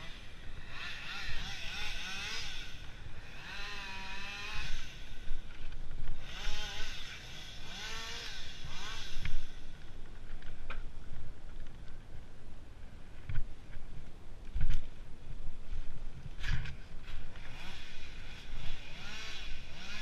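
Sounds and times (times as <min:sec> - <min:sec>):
chainsaw engine revving: 0:00.0 - 0:09.9, 0:17.3 - 0:20.0.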